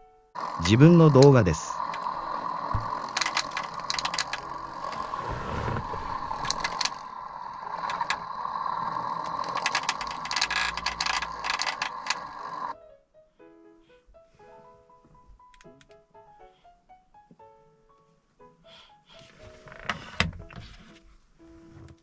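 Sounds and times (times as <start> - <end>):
sharp clicks and rattles: 0.4 - 12.8.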